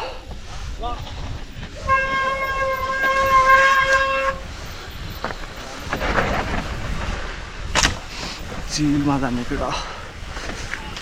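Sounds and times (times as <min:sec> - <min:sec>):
constant low rumble: 0:00.0 - 0:11.0
steady horn-like tone: 0:01.6 - 0:07.1.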